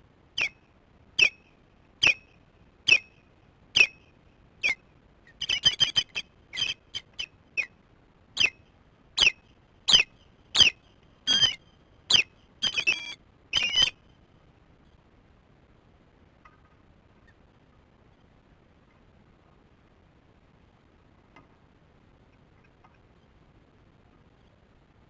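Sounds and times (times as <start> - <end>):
ospreys alarm calls: 0.4 - 0.6, 1.2 - 1.4, 2.0 - 2.3, 2.9 - 3.1, 3.8 - 4.0, 5.4 - 7.7, 8.4 - 8.6, 9.2 - 14.0.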